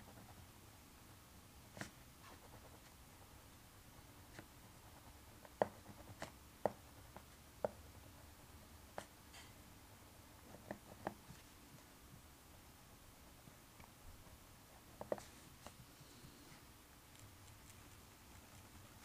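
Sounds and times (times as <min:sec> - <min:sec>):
pen scratching on paper: 0:00.0 - 0:00.4, 0:01.7 - 0:03.3, 0:04.2 - 0:08.2.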